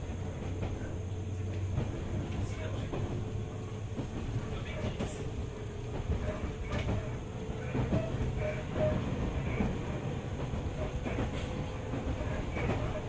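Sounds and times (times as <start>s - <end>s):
rail joint clicks: 0.0s - 13.0s
train wheels rumbling on rails: 0.0s - 13.0s.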